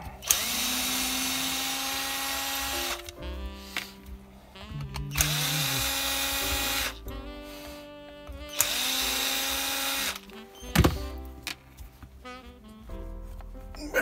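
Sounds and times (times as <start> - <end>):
rotary hammer motor spinning: 0.2 - 3.0, 5.1 - 6.9, 8.5 - 10.2.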